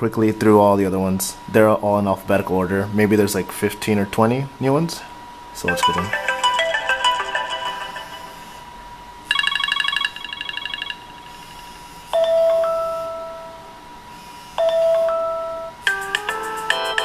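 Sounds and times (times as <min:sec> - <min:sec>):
electronic ringtone melody: 0:05.7 - 0:08.7, 0:09.3 - 0:11.6, 0:14.6 - 0:17.0
pulsing electronic chimes: 0:05.7 - 0:08.7
sustained electronic tone: 0:05.7 - 0:12.0.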